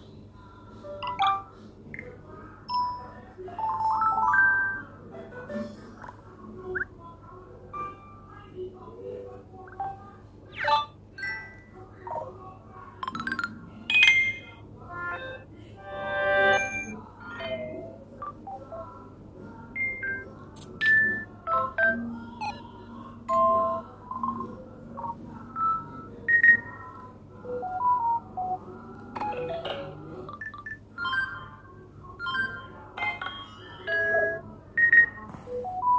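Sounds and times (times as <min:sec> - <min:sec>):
electronic ringtone beeps: 0:30.4 - 0:31.6, 0:32.2 - 0:35.9.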